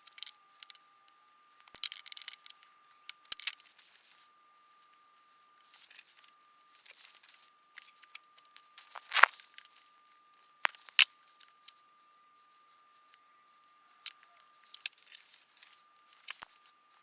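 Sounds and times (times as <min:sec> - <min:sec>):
rustling and scraping: 0:08.7 - 0:09.8.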